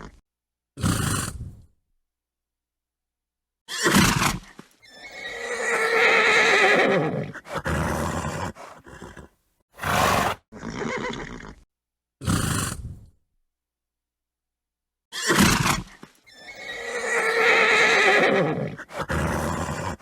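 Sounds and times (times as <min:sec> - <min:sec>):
horse neighing: 0:04.9 - 0:11.6, 0:16.3 - 0:20.0
horse snorting: 0:07.2 - 0:11.6, 0:18.2 - 0:20.0.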